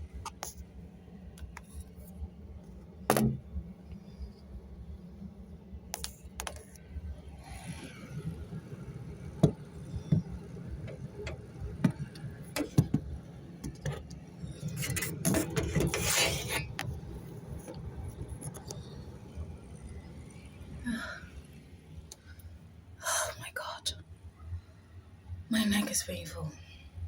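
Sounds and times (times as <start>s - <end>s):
scraping and rustling: 13.7s - 16.9s.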